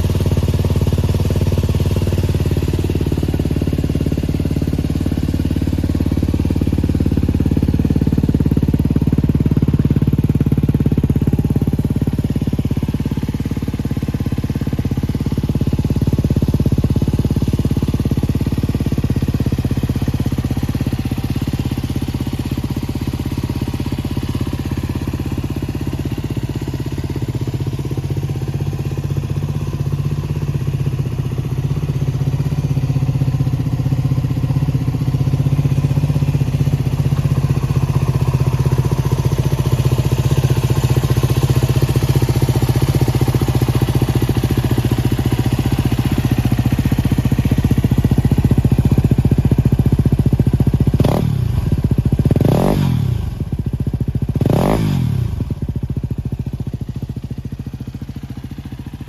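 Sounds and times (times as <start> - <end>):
motorcycle engine idling: 0.0 - 59.0
engine revving: 51.0 - 53.5, 54.4 - 55.4.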